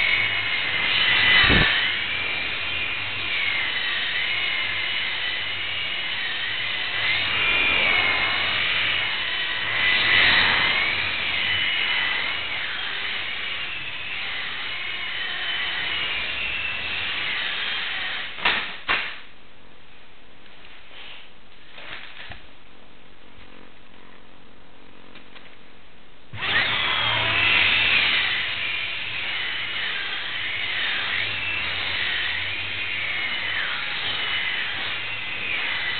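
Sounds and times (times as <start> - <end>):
rc helicopter motor whining: 0.0 - 18.4, 26.4 - 35.9.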